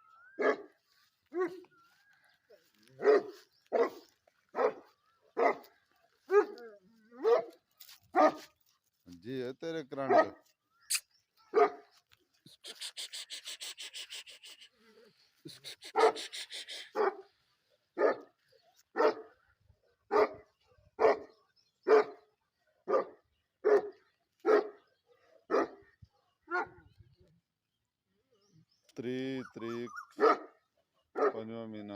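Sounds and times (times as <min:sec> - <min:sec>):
dog barking deeply: 0:03.0 - 0:05.7, 0:06.3 - 0:08.4, 0:10.0 - 0:10.4, 0:15.8 - 0:16.3, 0:16.9 - 0:17.3, 0:18.9 - 0:19.4, 0:20.1 - 0:22.3, 0:22.9 - 0:24.8, 0:25.4 - 0:25.9, 0:26.5 - 0:26.8, 0:29.7 - 0:31.5.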